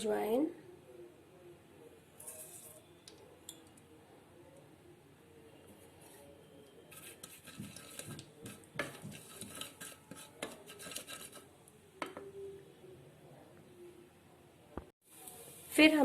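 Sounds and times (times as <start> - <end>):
spoon scraping against a pan: 2.2 - 2.9, 6.8 - 12.2
spoon knocking against a pan: 12.0 - 12.3.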